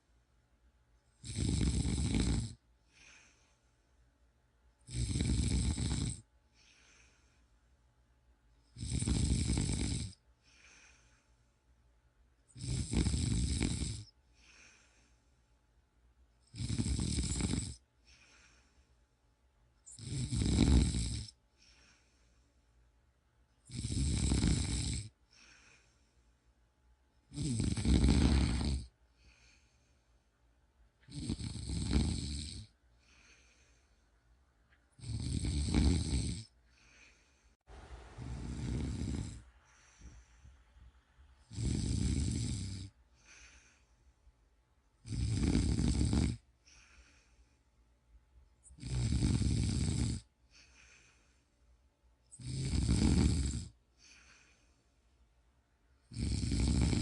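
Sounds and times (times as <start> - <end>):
person snoring: 1.2 - 3.4, 4.8 - 7.2, 8.7 - 11.2, 12.5 - 15.1, 16.5 - 18.7, 19.9 - 22.0, 23.6 - 26.0, 27.3 - 29.7, 31.0 - 33.8, 35.0 - 40.5, 41.4 - 43.9, 45.0 - 47.4, 48.6 - 51.2, 52.3 - 54.6, 56.1 - 57.0.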